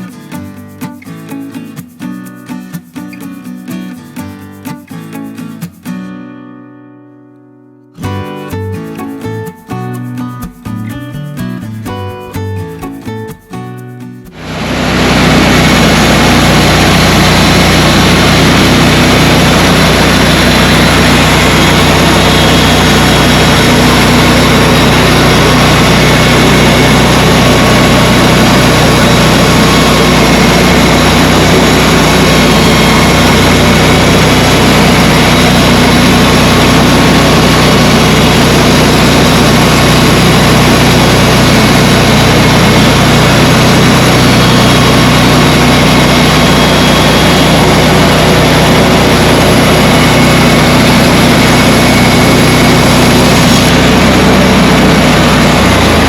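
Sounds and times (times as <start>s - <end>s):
sawmill engine running: 14.3s - 56.0s.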